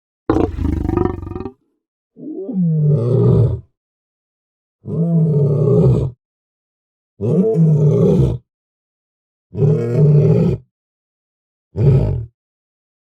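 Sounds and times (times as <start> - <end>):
lion roaring: 0.3 - 1.6.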